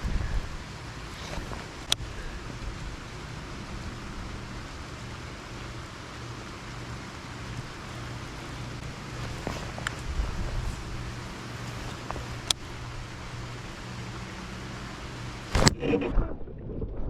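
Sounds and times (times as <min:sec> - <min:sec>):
faint low hum: 0:00.0 - 0:16.4
light clicks: 0:06.4 - 0:12.8.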